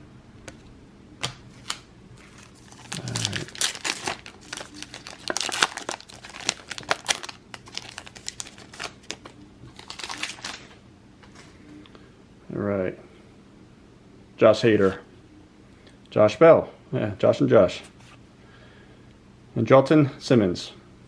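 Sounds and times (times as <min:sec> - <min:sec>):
cards rustling: 0:01.2 - 0:11.5
plastic wrapper crackling: 0:01.6 - 0:10.8.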